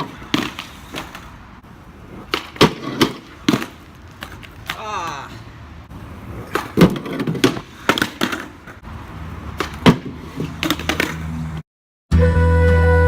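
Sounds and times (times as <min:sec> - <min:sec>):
skateboard clacking on ground: 0:00.0 - 0:05.4, 0:06.0 - 0:08.9, 0:09.5 - 0:11.4
skateboard wheels rumbling: 0:00.0 - 0:11.6
music: 0:12.1 - 0:13.0.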